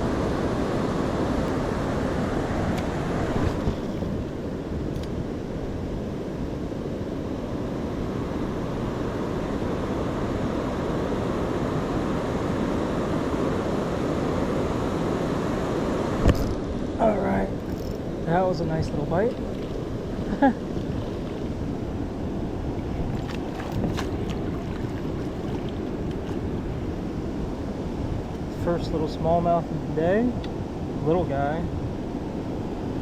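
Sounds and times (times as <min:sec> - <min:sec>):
water pouring over a dam: 0:23.0 - 0:26.6.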